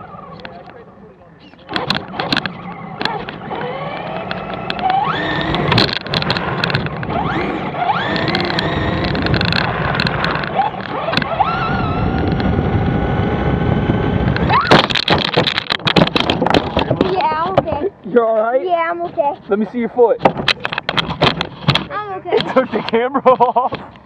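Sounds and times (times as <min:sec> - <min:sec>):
toy car motor whining: 0:01.4 - 0:15.0
car crashing and tumbling: 0:14.4 - 0:17.9.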